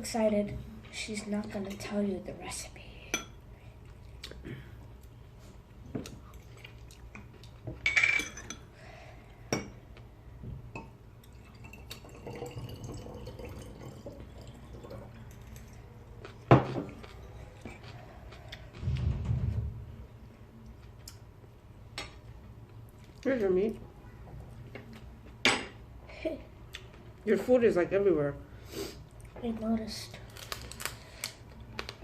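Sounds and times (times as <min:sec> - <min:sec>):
dishes and cutlery clinking: 0:06.0 - 0:08.7.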